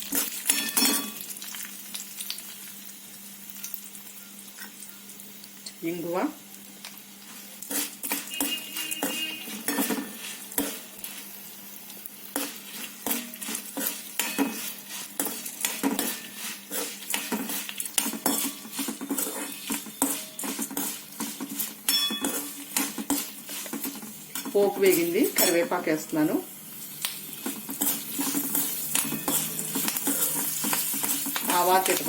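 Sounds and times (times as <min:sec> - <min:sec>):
oil sizzling: 0:00.0 - 0:32.0
spoon scraping in a pan: 0:07.2 - 0:11.4, 0:12.3 - 0:25.9, 0:26.8 - 0:32.0.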